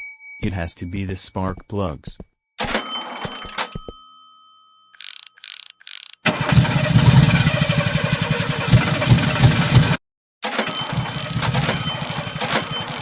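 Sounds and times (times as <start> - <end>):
car engine cranking: 5.4 - 9.8, 10.5 - 13.0.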